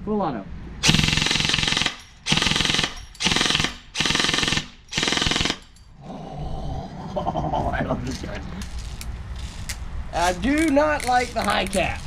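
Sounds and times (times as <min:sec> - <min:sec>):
airsoft gun firing bursts: 0:00.8 - 0:05.6.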